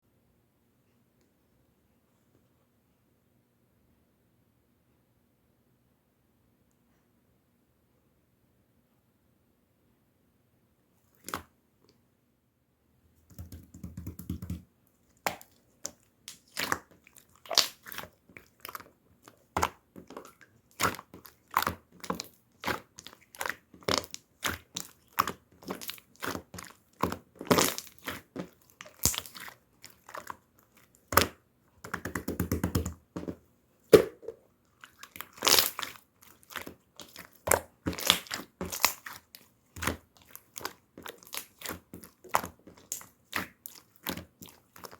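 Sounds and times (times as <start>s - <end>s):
slime squished by hands: 11.1s - 11.5s, 13.3s - 44.9s.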